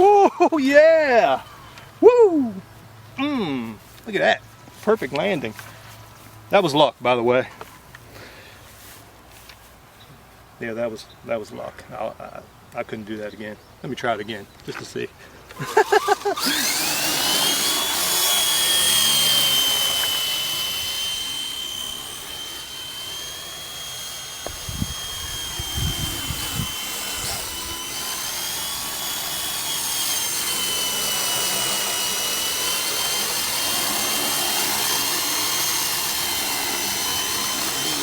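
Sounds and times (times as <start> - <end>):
helicopter rotor whine: 15.6 - 38.0.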